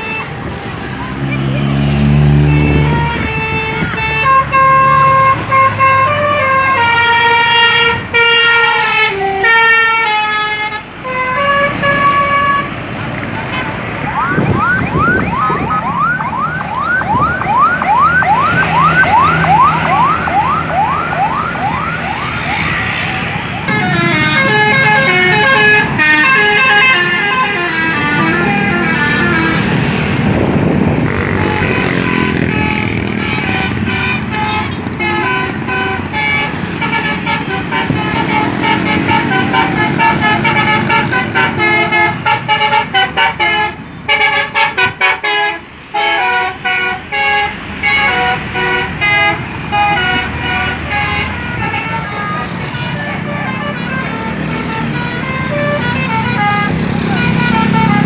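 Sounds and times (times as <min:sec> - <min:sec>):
multi-tone air horn melody: 0:00.0 - 0:00.5, 0:02.3 - 0:12.8, 0:23.6 - 0:58.0.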